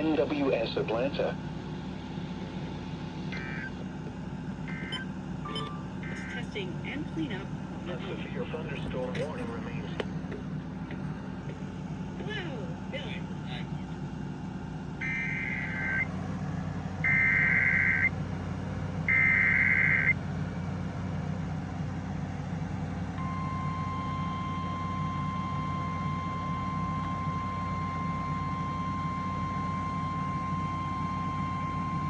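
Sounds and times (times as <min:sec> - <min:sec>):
steady low hum: 0:00.0 - 0:32.0
steady attention tone: 0:03.2 - 0:03.9, 0:04.6 - 0:09.9, 0:15.0 - 0:16.1, 0:17.0 - 0:18.1
warbling digital squawks: 0:03.3 - 0:03.8, 0:04.7 - 0:06.4, 0:15.0 - 0:16.1, 0:17.1 - 0:18.1.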